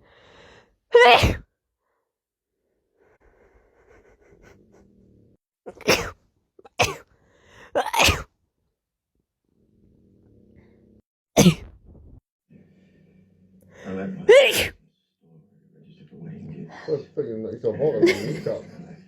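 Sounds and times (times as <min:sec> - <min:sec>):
person sneezing: 0:01.0 - 0:01.4, 0:05.7 - 0:07.0, 0:07.8 - 0:08.3, 0:11.4 - 0:11.7, 0:14.3 - 0:14.8.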